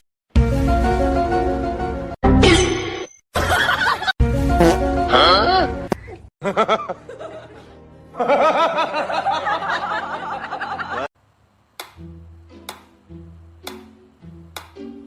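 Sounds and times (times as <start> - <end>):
plucked background music: 4.2 - 11.1, 11.8 - 15.0.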